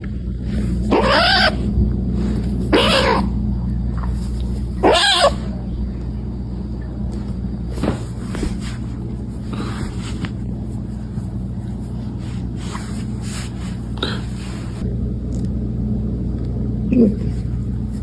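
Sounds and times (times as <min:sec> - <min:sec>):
low hum: 0:00.0 - 0:18.0
cat meowing: 0:00.9 - 0:01.6, 0:02.7 - 0:03.3, 0:04.8 - 0:05.5.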